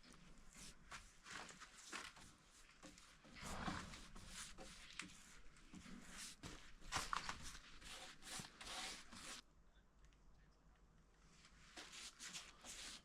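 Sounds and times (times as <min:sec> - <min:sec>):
brush scratching on wood: 0:03.5 - 0:06.6, 0:07.4 - 0:09.4, 0:11.8 - 0:13.0.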